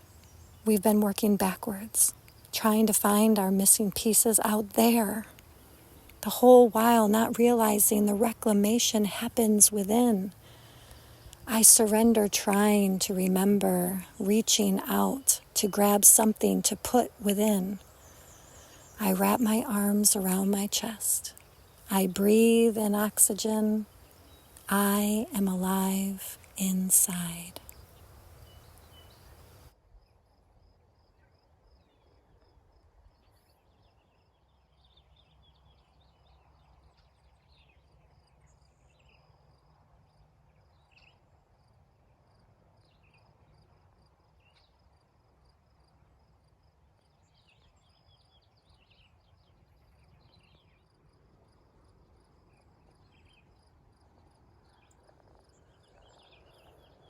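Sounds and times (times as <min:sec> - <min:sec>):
cricket chirping: 0:16.3 - 0:31.1.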